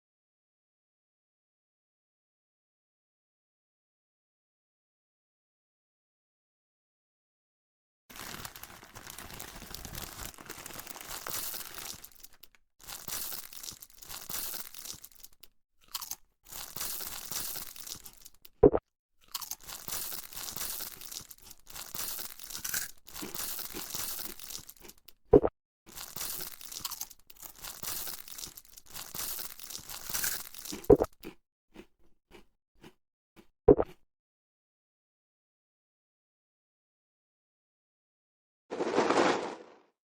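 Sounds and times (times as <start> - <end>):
crunching cereal chewing: 8.1 - 18.6, 19.2 - 25.3, 25.9 - 33.5.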